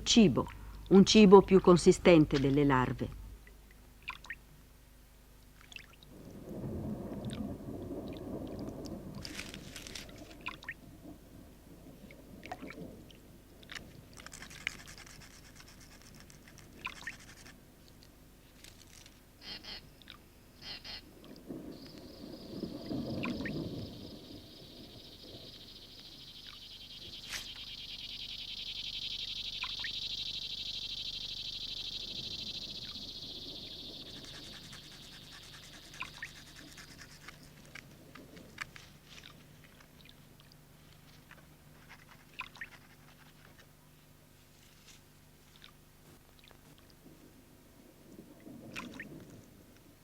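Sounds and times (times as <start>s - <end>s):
jungle ambience: 0.0s - 50.0s
high fast-pulsing animal trill: 31.9s - 37.4s.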